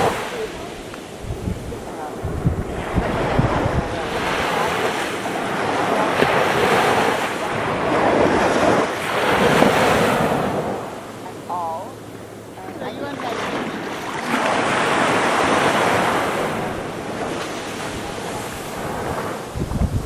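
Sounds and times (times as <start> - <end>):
waves breaking on sandy beach: 0.0 - 20.0
wind buffeting microphone: 0.0 - 20.0.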